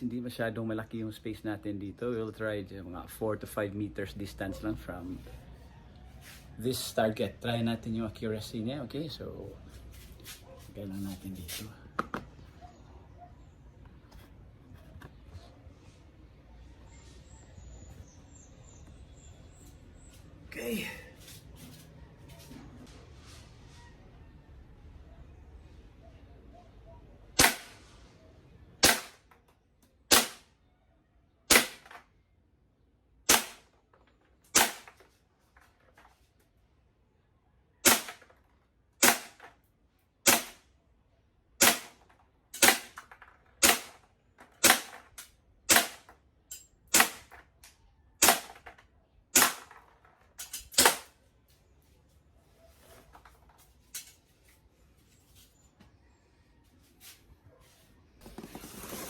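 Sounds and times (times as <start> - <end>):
airsoft pistol shots: 27.4 - 27.9, 28.8 - 29.3, 30.1 - 30.5, 31.5 - 32.0, 33.3 - 33.7, 34.5 - 35.0, 37.8 - 38.3, 39.0 - 39.5, 40.2 - 40.6, 41.6 - 42.0, 42.6 - 44.0, 44.6 - 45.0, 45.7 - 46.1, 46.9 - 47.3, 48.2 - 48.6, 49.3 - 49.7, 50.7 - 51.1.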